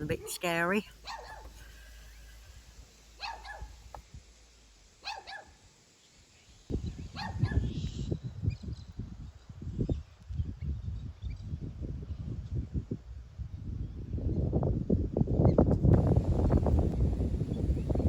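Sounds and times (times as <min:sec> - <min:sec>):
dog barking faintly: 0:03.2 - 0:03.8.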